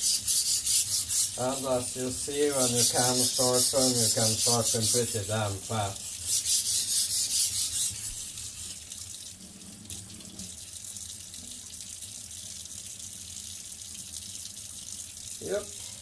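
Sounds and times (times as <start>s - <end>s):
knife scraping on whetstone: 0.0s - 8.8s
water running from tap: 0.0s - 16.0s.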